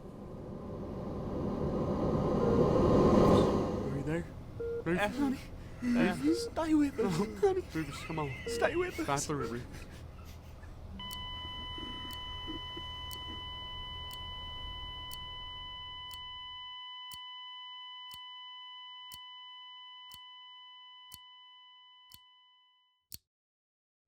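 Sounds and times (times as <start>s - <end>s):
heart monitor flatline tone: 2.3s - 3.5s, 4.6s - 4.9s, 6.0s - 6.7s, 8.5s - 8.9s, 11.0s - 22.8s.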